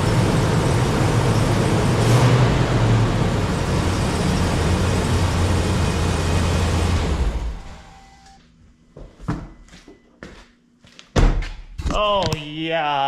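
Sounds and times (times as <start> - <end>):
pickup engine running: 0.0 - 8.1.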